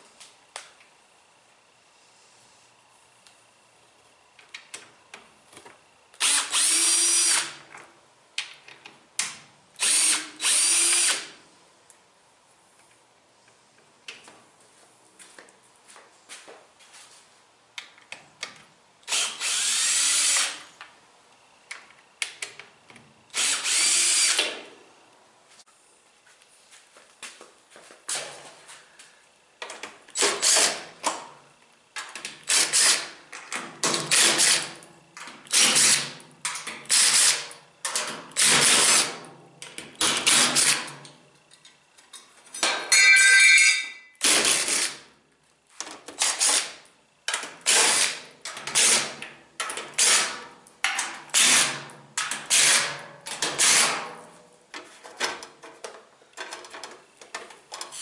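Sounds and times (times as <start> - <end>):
cordless drill short bursts: 6.2 - 7.6, 9.8 - 11.3, 19.1 - 20.6, 23.3 - 24.4.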